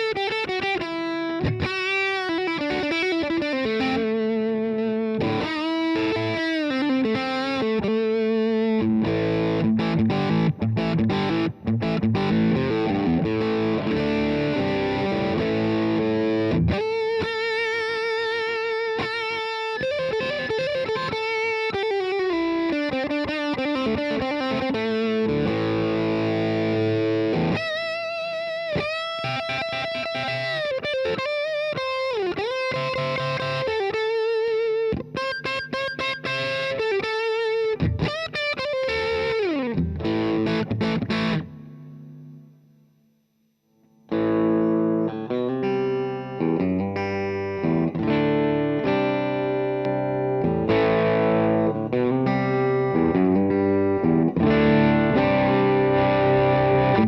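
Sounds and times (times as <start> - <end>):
distorted electric guitar: 0.0 - 57.0.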